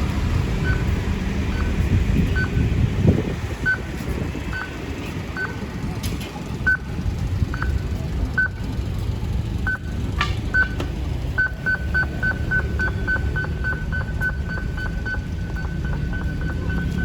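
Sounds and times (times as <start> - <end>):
steady low rumble: 0.0 - 17.0
short electronic beeps: 0.6 - 0.9, 1.5 - 2.6, 3.6 - 4.8, 5.4 - 5.6, 6.6 - 8.7, 9.6 - 10.8, 11.4 - 17.0.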